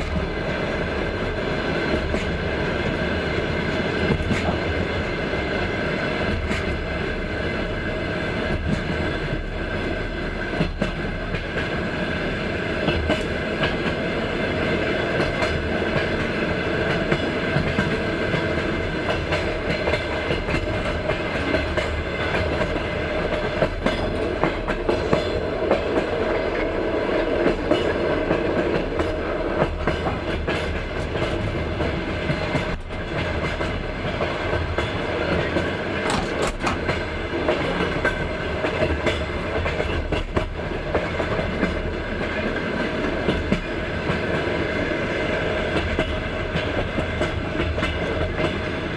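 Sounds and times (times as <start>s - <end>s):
train wheels rumbling on rails: 0.0s - 48.9s
wheels clacking over rail joints: 27.4s - 42.0s.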